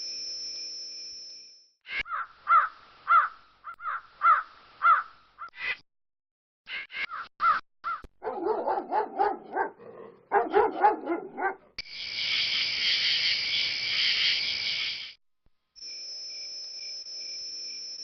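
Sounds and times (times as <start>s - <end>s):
crow cawing: 2.0s - 5.6s, 7.0s - 8.1s
dog barking: 8.2s - 11.8s
crickets chirping: 10.4s - 15.2s, 15.8s - 18.0s.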